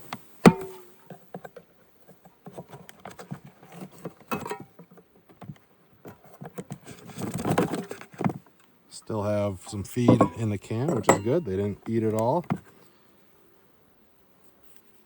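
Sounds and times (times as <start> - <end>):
metal can clicking and scraping: 0.5 - 1.6, 2.2 - 8.4, 9.6 - 12.8.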